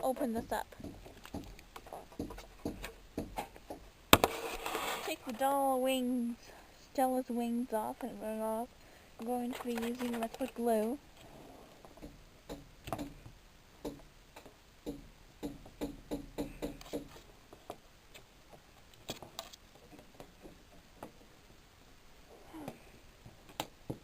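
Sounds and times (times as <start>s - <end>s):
plastic parts clicking and tapping: 0.2s - 4.3s.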